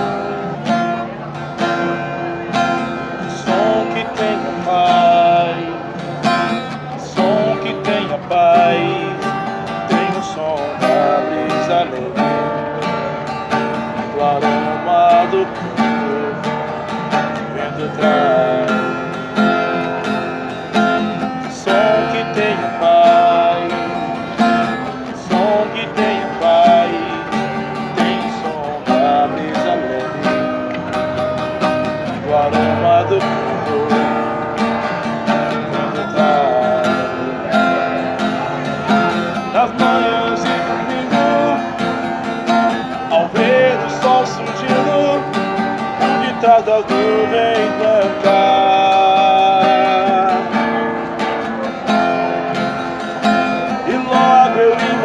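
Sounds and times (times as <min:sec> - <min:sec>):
strummed acoustic guitar: 0:00.0 - 0:55.0.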